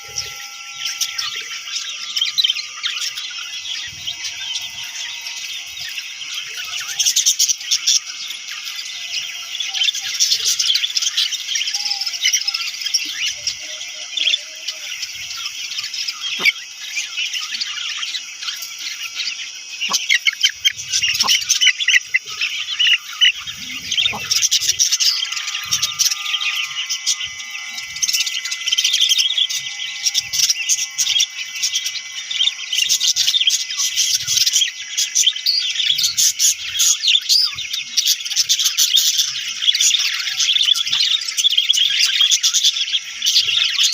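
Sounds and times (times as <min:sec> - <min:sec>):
budgerigars chirping: 0:00.0 - 0:43.9.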